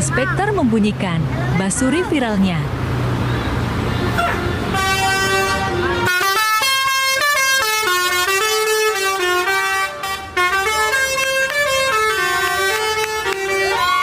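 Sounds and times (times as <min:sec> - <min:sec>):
multi-tone bus horn tune: 0:04.0 - 0:14.0.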